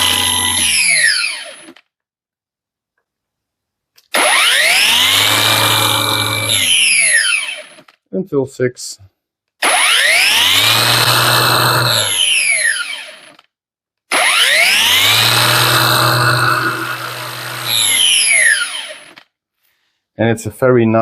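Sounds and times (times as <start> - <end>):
angle grinder whining: 0.0 - 1.8, 4.1 - 7.9, 9.6 - 13.4, 14.1 - 19.2.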